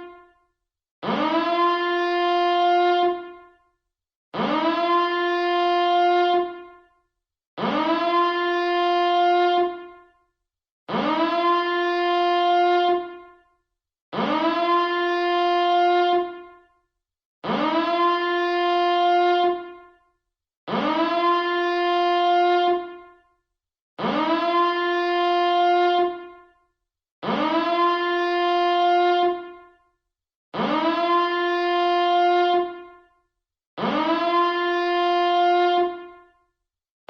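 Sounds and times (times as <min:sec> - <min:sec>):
alarm siren blasts: 0:01.0 - 0:03.8, 0:04.4 - 0:07.0, 0:07.6 - 0:10.3, 0:10.9 - 0:13.5, 0:14.1 - 0:16.8, 0:17.4 - 0:23.3, 0:24.0 - 0:26.6, 0:27.2 - 0:29.9, 0:30.6 - 0:33.2, 0:33.8 - 0:36.5.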